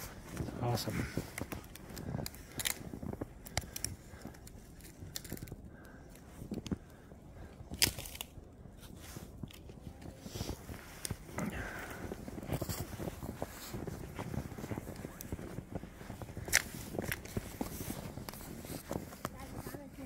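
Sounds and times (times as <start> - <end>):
footsteps crunching in snow: 7.9 - 20.0.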